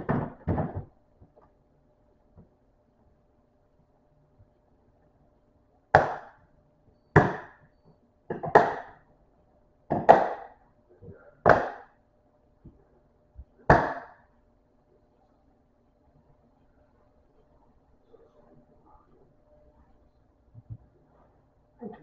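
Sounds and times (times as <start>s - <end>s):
sharp knocks of hard objects: 5.9s - 6.4s, 7.1s - 7.7s, 8.3s - 9.0s, 9.9s - 10.6s, 11.4s - 12.0s, 13.7s - 14.2s.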